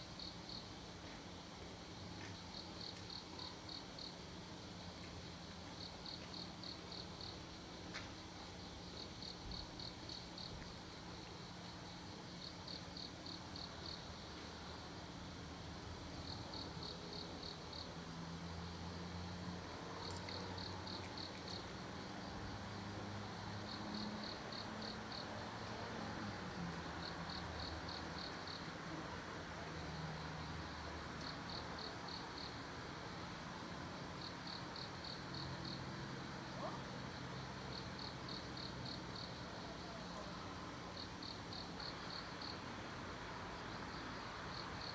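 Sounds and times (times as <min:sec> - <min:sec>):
insect chirping: 0:27.0 - 0:28.7, 0:37.4 - 0:40.0, 0:41.0 - 0:42.7, 0:43.4 - 0:44.9.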